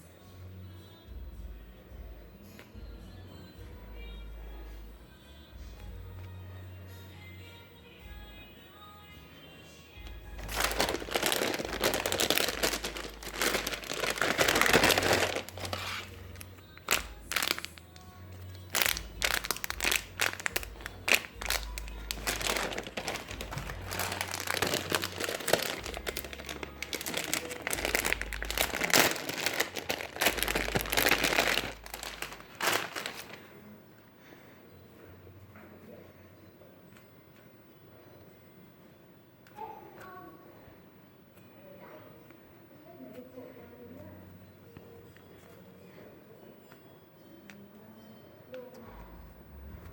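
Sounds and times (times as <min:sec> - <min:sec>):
packaging crinkling and rustling: 0:10.4 - 0:33.5.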